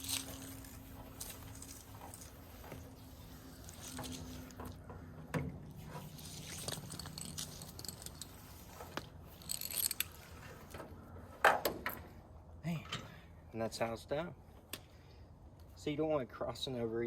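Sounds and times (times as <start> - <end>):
hose scraping against reel: 0.0 - 4.8, 5.7 - 10.7.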